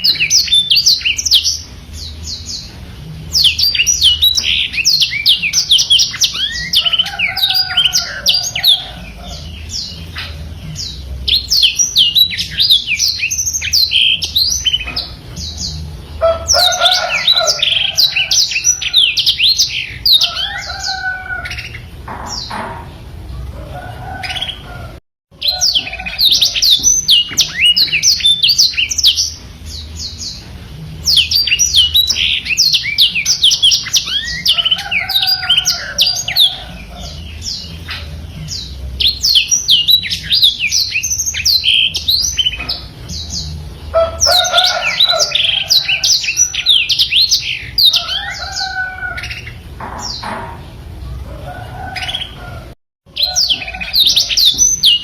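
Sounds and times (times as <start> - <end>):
canary singing chirps and trills: 0.0 - 55.0.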